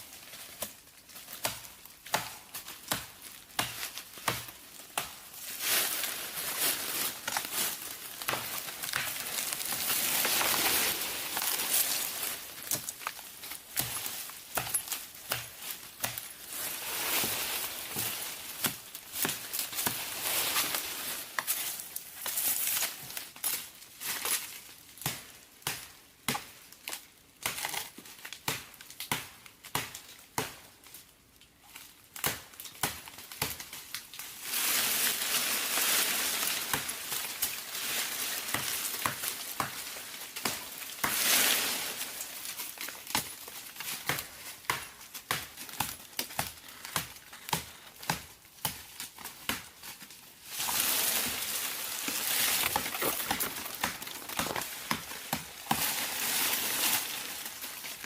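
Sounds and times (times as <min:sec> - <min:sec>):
crinkling handling noise: 0:00.0 - 0:24.9, 0:33.6 - 0:58.0
dense rustling: 0:50.4 - 0:58.0.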